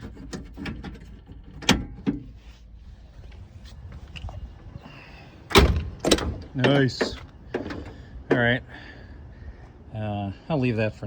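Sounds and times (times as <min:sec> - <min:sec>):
car door lock clicks: 0:05.5 - 0:07.9.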